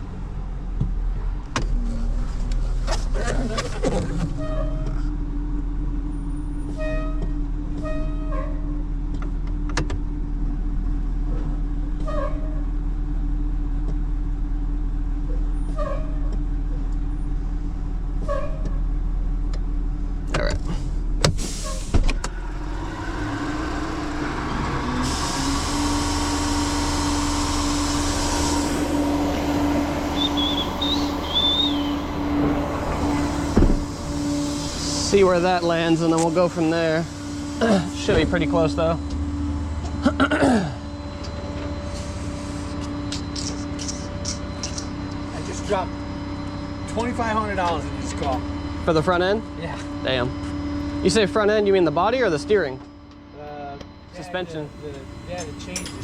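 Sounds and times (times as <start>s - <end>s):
tow truck engine whining: 0.0s - 56.0s
hiss: 21.4s - 22.0s, 25.0s - 29.0s, 33.0s - 35.4s
short chirps: 30.1s - 32.1s.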